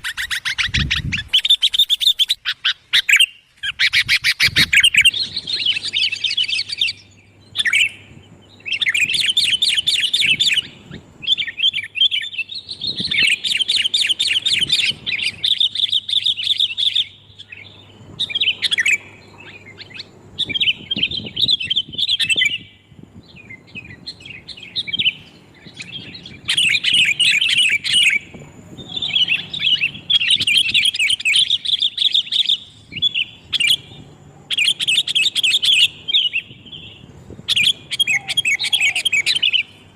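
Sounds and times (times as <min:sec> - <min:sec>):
bulbuls chattering: 0:23.5 - 0:39.9.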